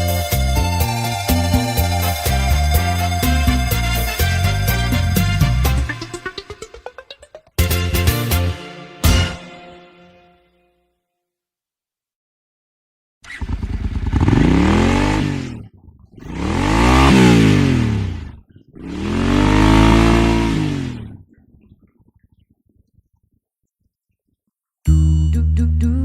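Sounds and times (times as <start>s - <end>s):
engine revving: 0.0s - 6.5s, 13.2s - 21.2s.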